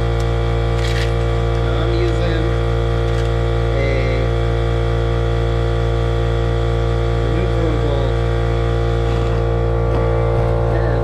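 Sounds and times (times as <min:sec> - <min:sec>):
steady low hum of held tones: 0:00.0 - 0:11.0.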